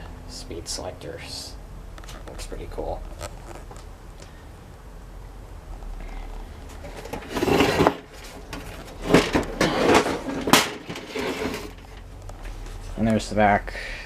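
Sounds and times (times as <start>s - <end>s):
box fan scraping and knocking: 6.7s - 12.9s.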